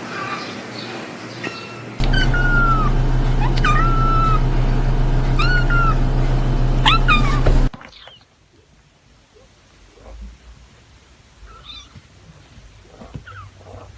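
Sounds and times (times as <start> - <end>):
steady low hum: 2.0 - 7.7.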